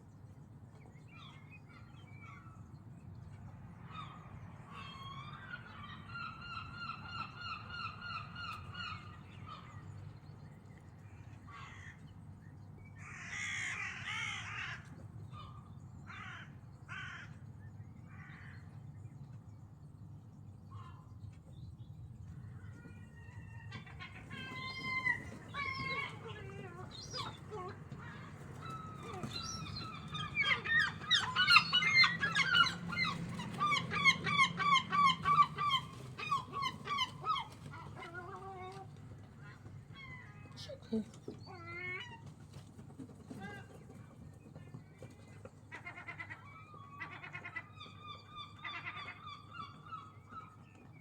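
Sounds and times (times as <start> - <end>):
gulls calling: 23.8 - 38.9.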